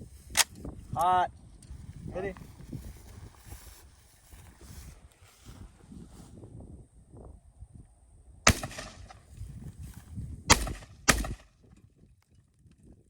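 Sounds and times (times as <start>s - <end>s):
gunshots: 8.5s - 9.2s, 10.5s - 11.5s.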